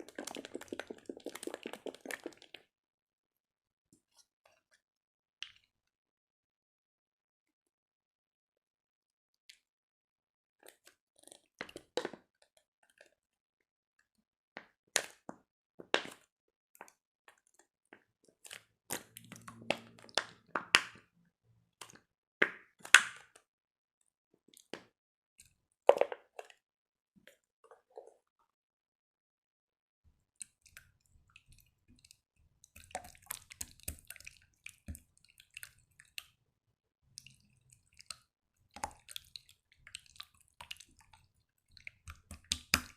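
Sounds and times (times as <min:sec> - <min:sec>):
slime squishing with sticky pops: 0:00.0 - 0:02.6, 0:32.7 - 0:36.4, 0:37.6 - 0:42.9.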